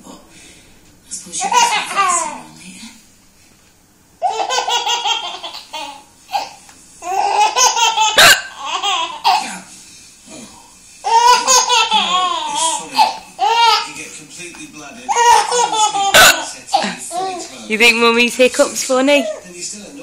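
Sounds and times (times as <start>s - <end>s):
baby belly-laughing: 1.4s - 2.4s, 4.2s - 9.6s, 11.0s - 14.0s, 15.1s - 17.5s.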